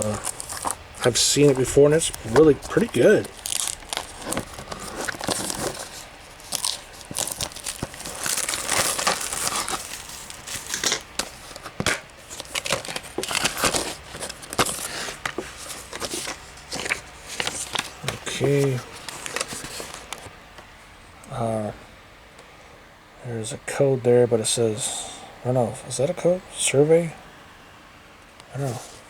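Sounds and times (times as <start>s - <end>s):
plastic shrink-wrap crinkling: 0.0s - 20.3s.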